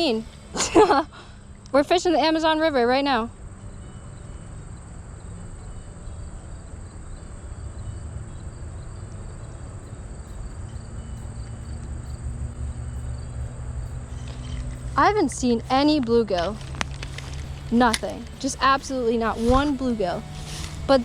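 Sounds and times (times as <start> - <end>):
low rumble: 0.0 - 5.6, 7.7 - 21.0
insects droning: 0.0 - 21.0
faint rapid ticking: 8.2 - 21.0.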